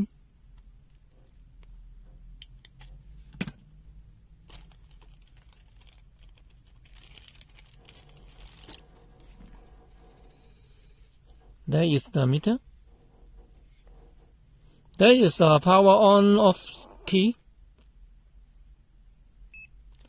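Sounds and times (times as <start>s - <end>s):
plastic film crinkling: 4.4s - 9.4s.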